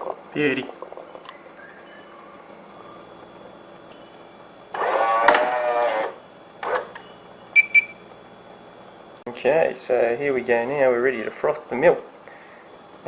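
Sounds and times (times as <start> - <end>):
coffee machine mechanical whirr: 0.0 - 13.0
faint steady high whine: 0.0 - 13.0.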